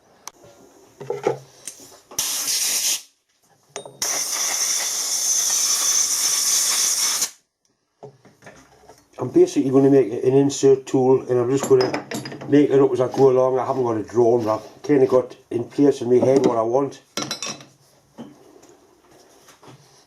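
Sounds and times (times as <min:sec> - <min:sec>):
hissing spray: 0:02.2 - 0:03.1, 0:04.0 - 0:07.4.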